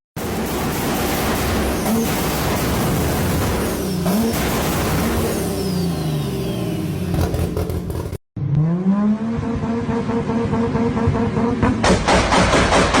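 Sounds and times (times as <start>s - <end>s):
car engine revs dropping: 1.5s - 13.0s
engine-like sound rising in pitch: 5.3s - 13.0s.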